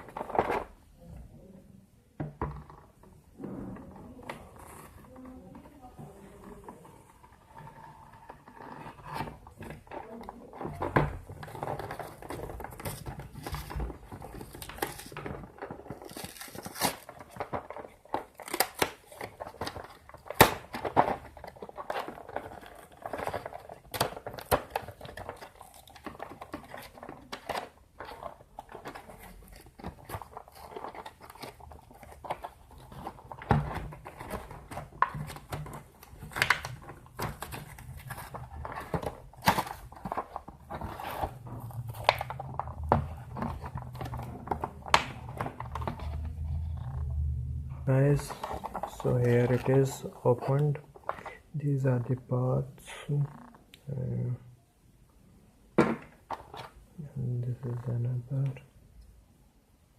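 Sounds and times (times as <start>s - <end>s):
wrapping crinkling and tearing: 6.1s - 51.8s.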